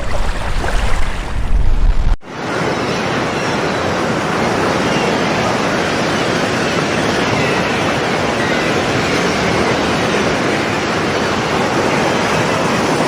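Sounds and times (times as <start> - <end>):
sea surf breaking: 0.0 - 13.0
wind buffeting microphone: 0.0 - 13.0.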